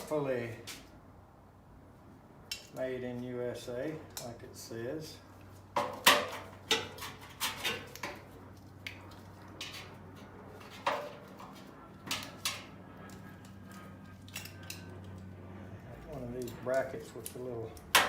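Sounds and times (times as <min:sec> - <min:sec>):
steady low hum: 0:00.0 - 0:18.0
metal parts clinking: 0:14.2 - 0:15.2.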